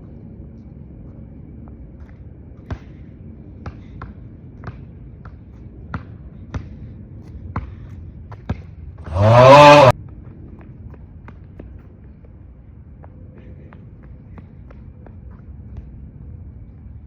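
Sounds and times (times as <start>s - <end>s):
basketball bouncing on hard court: 3.6s - 6.7s, 8.3s - 8.7s.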